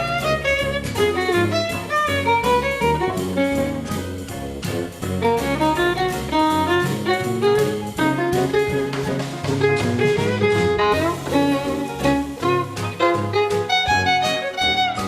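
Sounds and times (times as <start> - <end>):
upbeat jazzy music: 0.0 - 15.0
walking bass line: 0.0 - 15.0.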